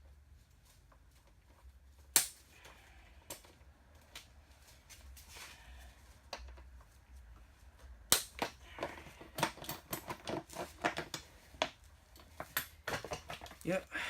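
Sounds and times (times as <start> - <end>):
clicks knocks and plastic rattles: 8.3 - 13.6.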